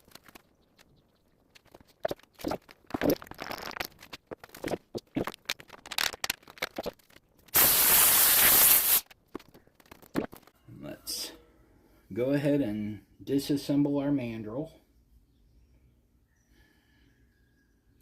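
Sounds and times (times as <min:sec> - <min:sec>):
loud steady hiss: 0:07.6 - 0:09.0.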